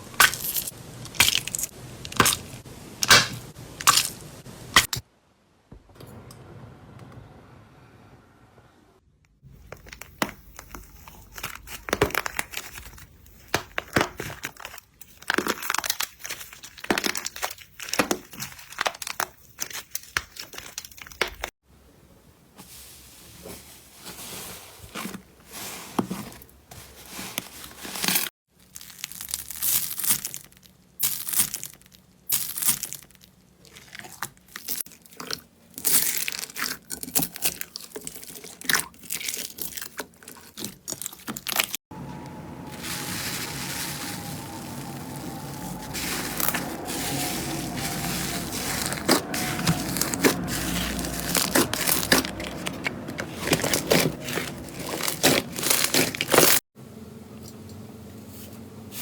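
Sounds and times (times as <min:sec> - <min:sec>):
crunchy slime crackling: 0:00.0 - 0:04.2, 0:09.5 - 0:21.5, 0:27.8 - 0:56.6.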